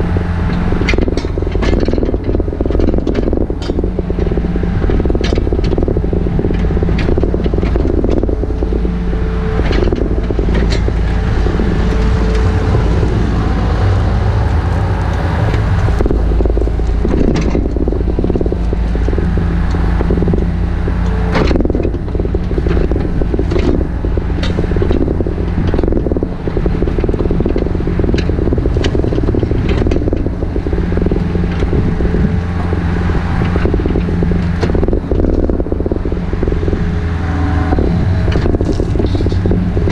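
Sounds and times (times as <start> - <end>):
engine running: 0.0 - 39.9
knocks and scrapes: 0.0 - 39.9.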